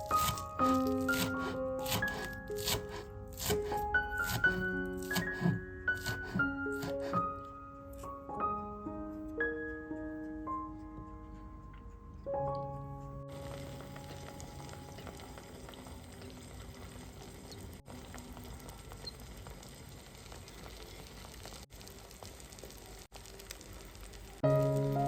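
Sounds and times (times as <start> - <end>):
food sizzling in a pan: 13.3 - 25.0.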